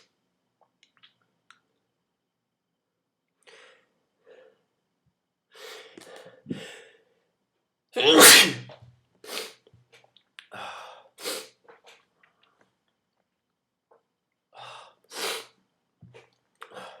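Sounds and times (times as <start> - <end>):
person sneezing: 8.0 - 8.8.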